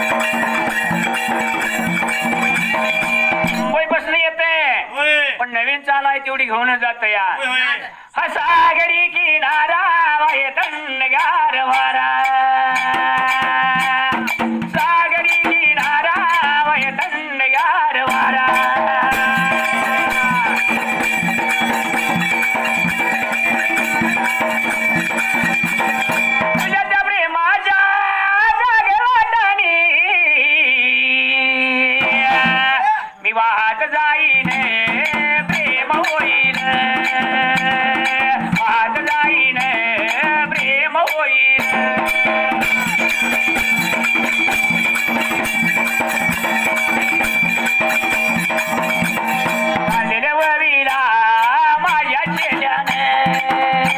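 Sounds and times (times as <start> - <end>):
steady drum beat: 0.0 - 4.0, 10.6 - 17.2, 18.0 - 26.9, 34.4 - 53.9.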